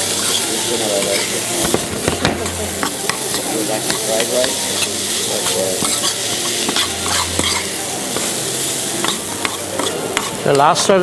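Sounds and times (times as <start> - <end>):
utensil scraping and tapping pan: 0.0 - 8.4, 9.0 - 11.0
rice sizzling in a pan: 0.0 - 11.0.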